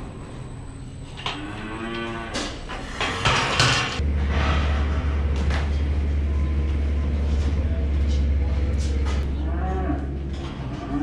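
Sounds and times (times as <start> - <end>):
steady low hum: 0.0 - 11.0
cow mooing: 1.3 - 2.7, 9.3 - 11.0.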